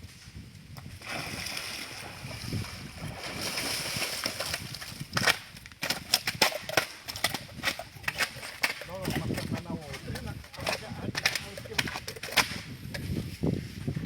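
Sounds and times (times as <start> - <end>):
river water sloshing and splashing: 1.0 - 5.2.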